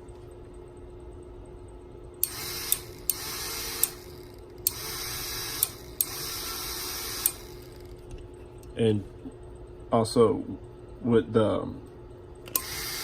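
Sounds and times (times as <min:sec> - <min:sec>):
small motor whirring: 0:02.2 - 0:08.0, 0:12.6 - 0:13.0.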